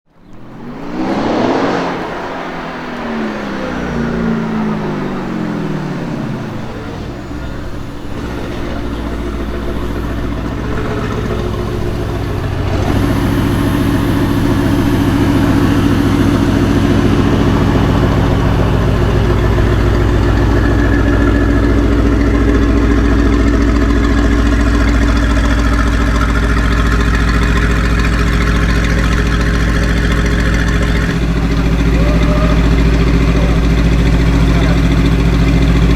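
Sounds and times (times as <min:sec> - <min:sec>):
car engine revving and idling: 0:00.1 - 0:35.9.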